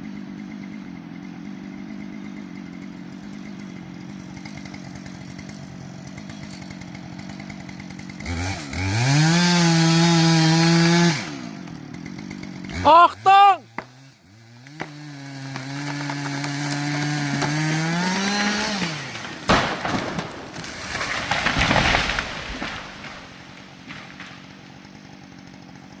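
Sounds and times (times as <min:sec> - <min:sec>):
chainsaw running: 0:00.0 - 0:26.0
loud tree crack: 0:02.1 - 0:12.9, 0:13.7 - 0:26.0
tree crashing down: 0:14.6 - 0:25.6.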